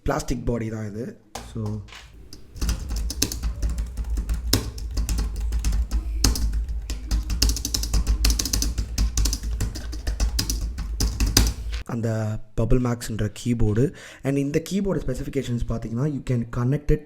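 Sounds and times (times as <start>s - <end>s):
keyboard keys clacking: 1.4s - 11.8s.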